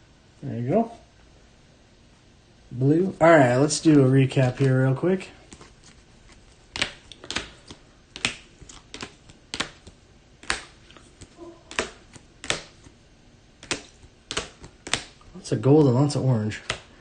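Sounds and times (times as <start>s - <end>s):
cards tapping on a table: 6.7s - 12.9s, 13.6s - 15.2s.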